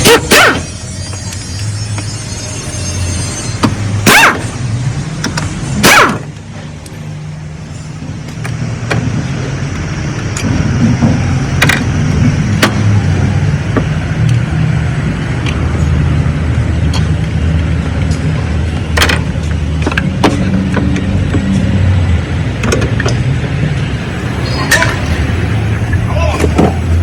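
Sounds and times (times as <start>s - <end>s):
sharp clicks and knocks: 10.2s - 12.9s, 18.9s - 21.7s, 22.6s - 23.9s.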